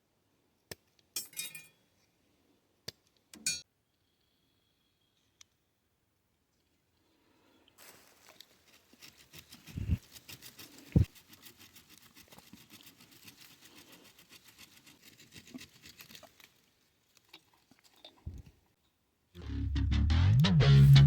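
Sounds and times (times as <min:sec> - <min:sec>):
light scraping strokes: 0:07.8 - 0:16.7.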